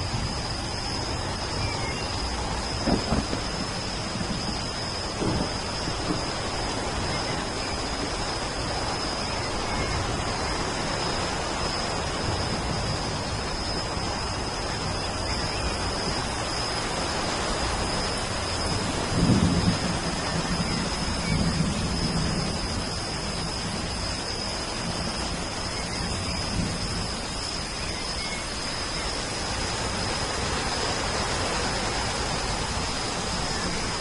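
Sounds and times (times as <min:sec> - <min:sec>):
thunder rolling: 0:00.0 - 0:11.4, 0:17.8 - 0:27.8
steady rain falling: 0:00.0 - 0:34.0
thin high whine: 0:00.0 - 0:34.0.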